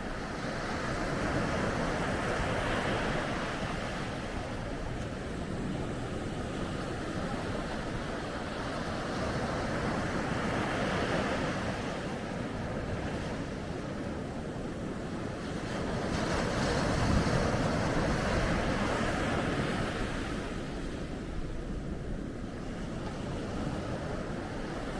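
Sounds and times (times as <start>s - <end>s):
ocean surf on beach: 0.0s - 24.9s.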